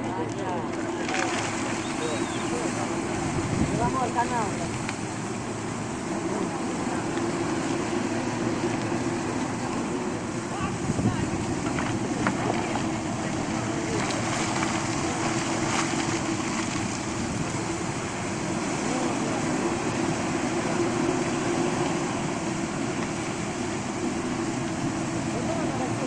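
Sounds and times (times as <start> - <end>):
flowing water: 0.0 - 26.0
heavy machine engine droning: 0.0 - 26.0.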